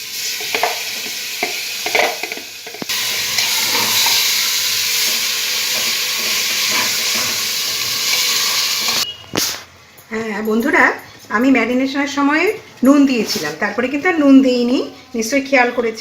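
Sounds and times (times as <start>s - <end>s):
meat sizzling in hot oil: 0.0s - 9.0s.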